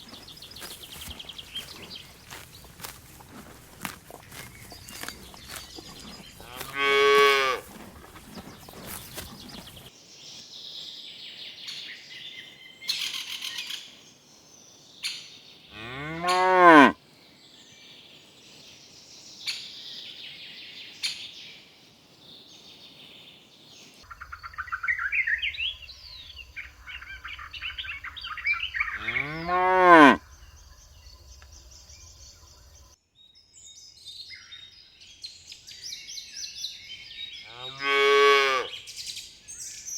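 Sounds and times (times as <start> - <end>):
birds chirping: 0.0 - 9.9, 24.0 - 33.0
cattle mooing: 5.9 - 8.1, 15.8 - 17.0, 29.0 - 30.2.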